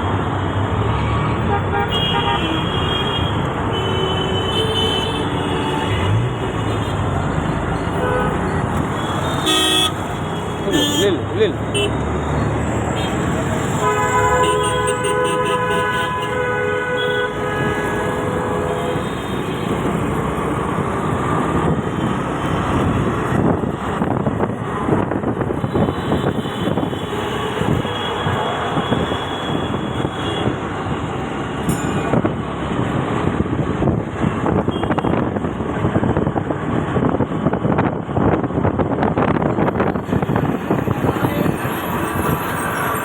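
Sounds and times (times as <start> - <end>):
train rumbling on rails: 38.0 - 43.0.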